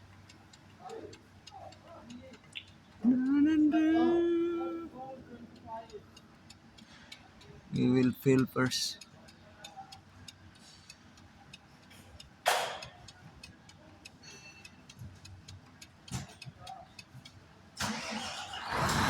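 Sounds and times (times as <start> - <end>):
faint light ticking: 0.0 - 17.8.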